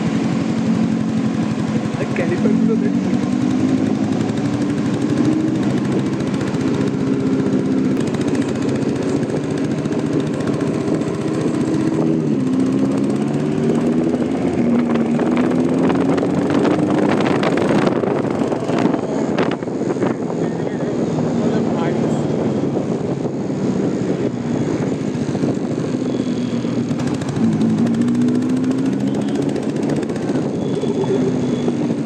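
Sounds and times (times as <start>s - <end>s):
sports car engine running: 0.0s - 20.2s.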